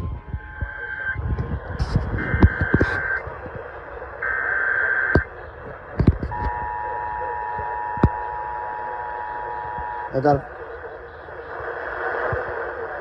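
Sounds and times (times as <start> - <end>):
digital header tones: 0.0 - 3.2, 6.0 - 11.3
sharp clicks: 5.0 - 5.3
two-tone attention signal: 6.3 - 10.4.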